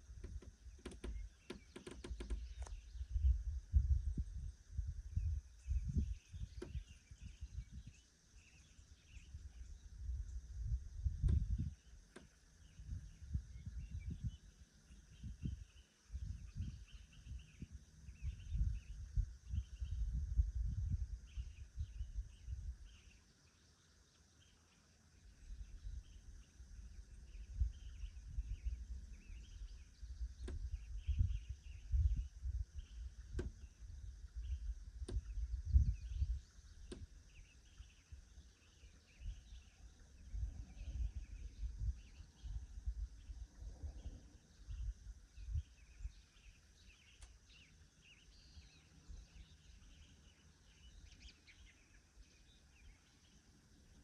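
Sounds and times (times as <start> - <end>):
wind gusting on microphone: 0.0 - 8.0, 8.6 - 12.0, 12.6 - 23.0, 25.4 - 46.5.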